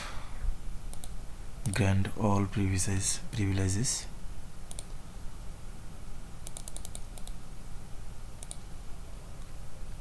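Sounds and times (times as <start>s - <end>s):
steady low hum: 0.0s - 10.0s
computer keyboard typing: 6.4s - 7.4s, 8.4s - 8.6s.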